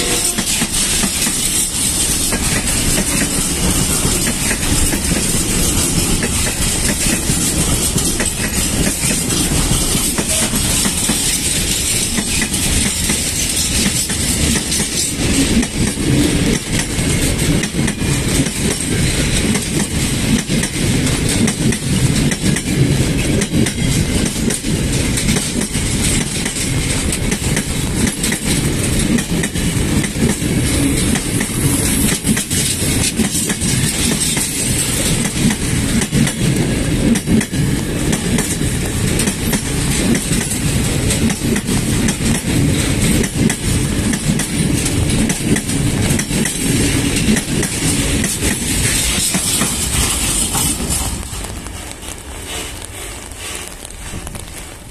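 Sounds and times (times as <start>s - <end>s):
hiss: 0.3s - 15.2s, 48.4s - 54.2s.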